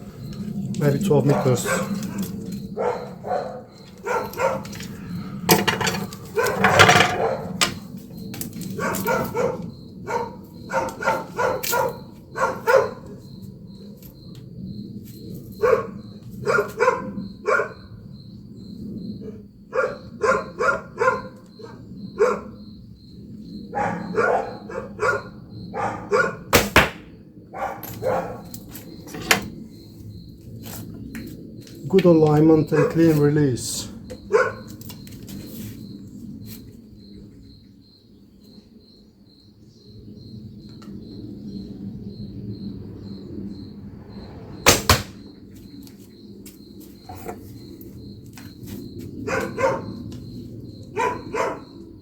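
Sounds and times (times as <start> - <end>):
dogs barking: 1.2 - 5.3, 6.1 - 7.9, 8.7 - 13.3, 15.6 - 18.0, 19.2 - 22.6, 23.6 - 26.5, 27.5 - 28.6, 32.6 - 33.2, 34.0 - 35.0, 49.1 - 52.0.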